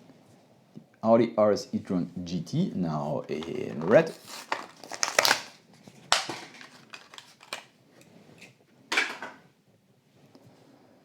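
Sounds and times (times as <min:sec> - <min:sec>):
plastic blister pack tearing open: 0:03.4 - 0:07.7.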